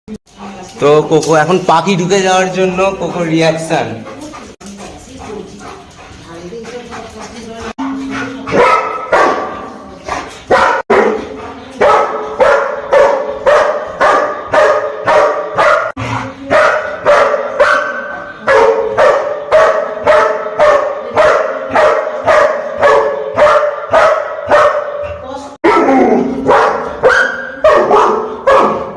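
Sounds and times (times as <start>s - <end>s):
dog barking: 8.4s - 28.9s.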